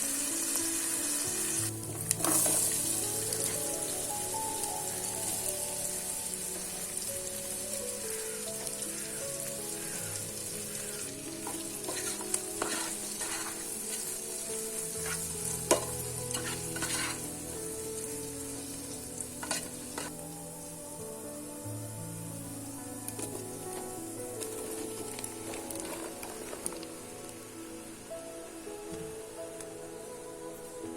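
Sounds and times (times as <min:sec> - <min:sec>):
food sizzling in a pan: 0:00.0 - 0:30.9
stirring clicks and scrapes: 0:01.9 - 0:03.7, 0:11.4 - 0:14.2, 0:15.0 - 0:17.3, 0:19.4 - 0:20.2, 0:24.4 - 0:26.9.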